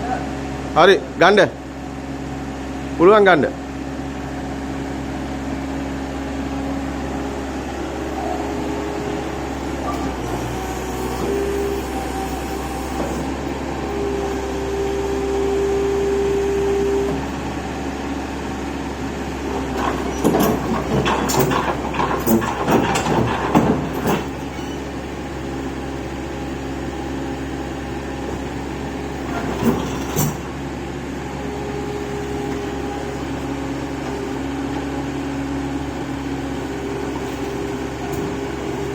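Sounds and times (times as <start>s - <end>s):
excavator diesel engine running: 3.6s - 38.9s
steady machine whine: 4.0s - 38.9s
metal clanks and knocks: 19.7s - 25.0s, 29.2s - 30.6s.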